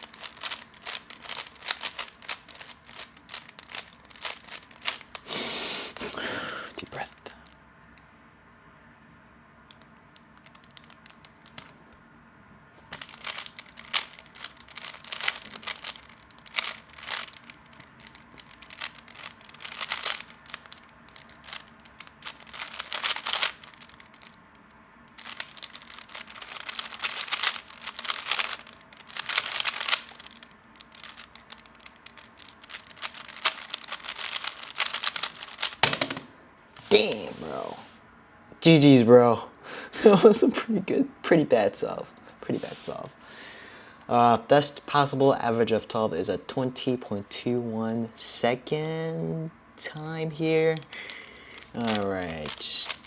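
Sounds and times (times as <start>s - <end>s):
puzzle cube plastic clicking: 0.0s - 8.0s, 9.7s - 11.8s, 12.9s - 36.3s, 50.7s - 53.0s.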